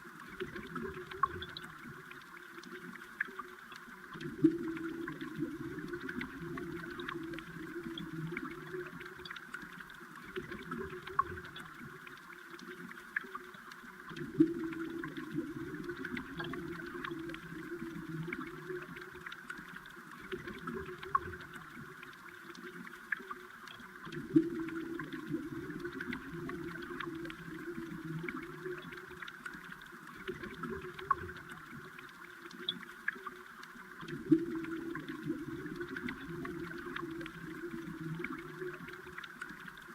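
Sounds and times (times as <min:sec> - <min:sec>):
small ticks and clicks: 0:00.0 - 0:39.9
stream water gurgling underwater: 0:00.0 - 0:39.9.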